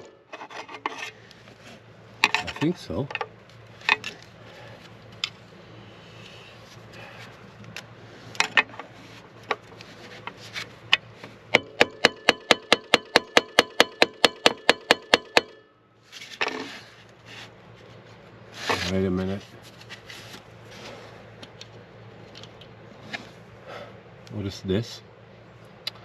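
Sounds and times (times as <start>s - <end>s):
hand tool knocking and scraping: 0.0s - 1.2s, 2.2s - 4.2s.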